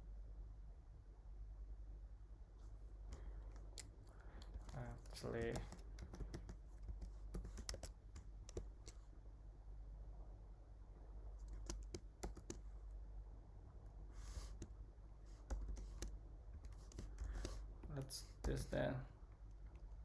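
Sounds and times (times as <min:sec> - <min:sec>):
low steady hum: 0:00.0 - 0:20.0
keyboard key clicks: 0:03.1 - 0:09.0, 0:11.4 - 0:12.6.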